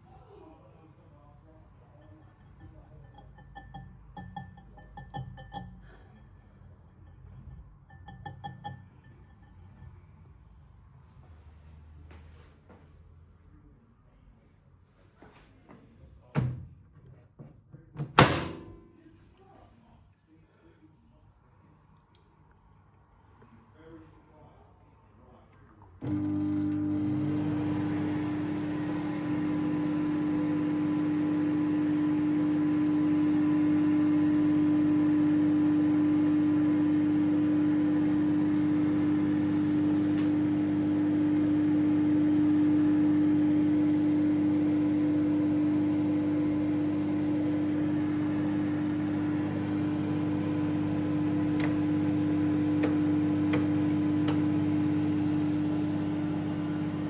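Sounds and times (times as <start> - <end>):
microwave humming with fan noise: 0.1 - 10.4, 18.0 - 19.1, 25.9 - 57.0.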